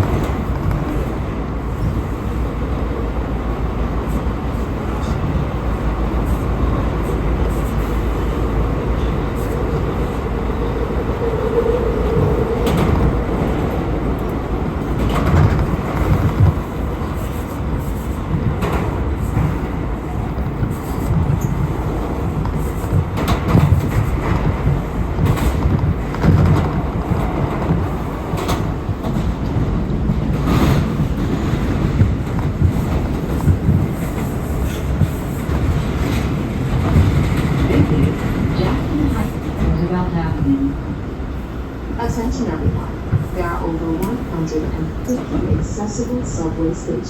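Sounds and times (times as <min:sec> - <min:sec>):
subway wheels rumbling on rail: 0:00.0 - 0:47.0
clacks over rail joints: 0:12.2 - 0:17.4, 0:18.0 - 0:40.5.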